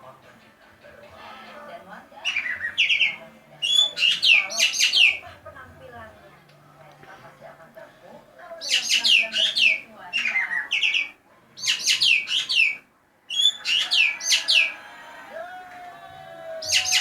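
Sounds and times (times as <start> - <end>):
bird chattering calls: 2.2 - 5.2, 8.6 - 14.8.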